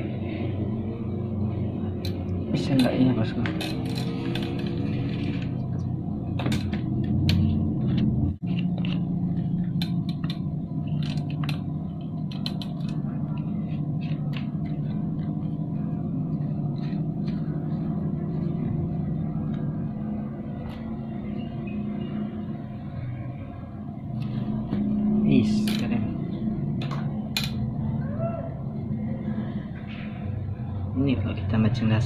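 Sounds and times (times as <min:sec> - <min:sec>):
low engine-like hum: 0:00.0 - 0:32.0.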